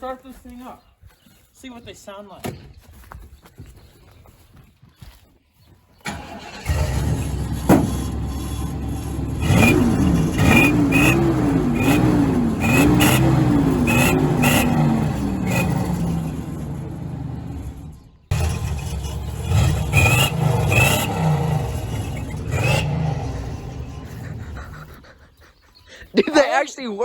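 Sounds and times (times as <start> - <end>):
truck engine starting and revving: 6.0 - 25.6.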